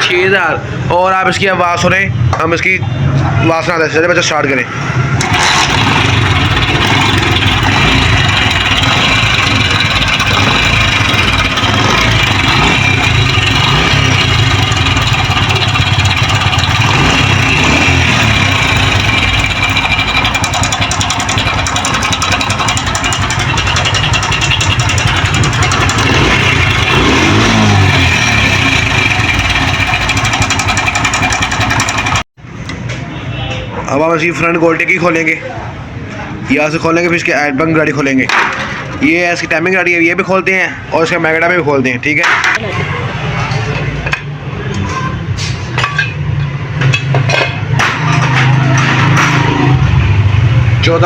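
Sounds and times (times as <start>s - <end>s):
motorcycle engine running: 5.0s - 32.3s.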